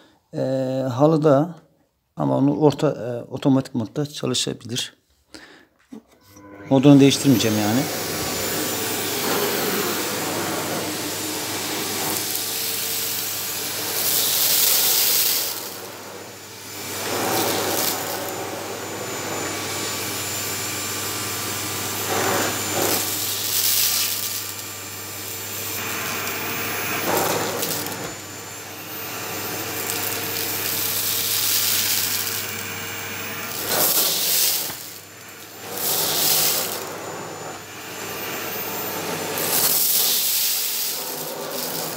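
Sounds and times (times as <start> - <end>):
vacuum cleaner running on carpet: 6.7 - 41.9.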